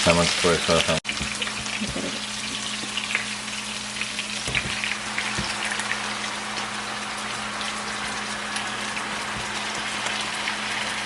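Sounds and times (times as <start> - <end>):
chicken sizzling in a pan: 0.0 - 11.0.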